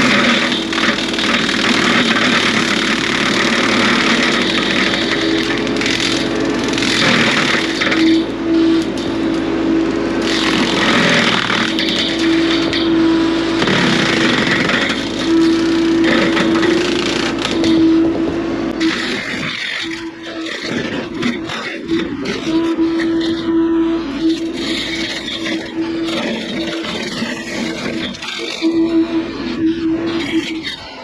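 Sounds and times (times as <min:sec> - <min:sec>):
brush cutter spinning: 0:00.0 - 0:09.2
mini excavator running: 0:00.0 - 0:31.0.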